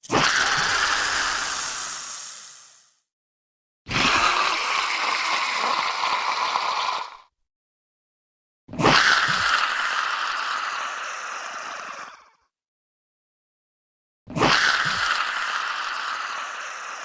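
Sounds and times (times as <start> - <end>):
hissing creature calls: 0.0 - 3.0, 3.9 - 7.2.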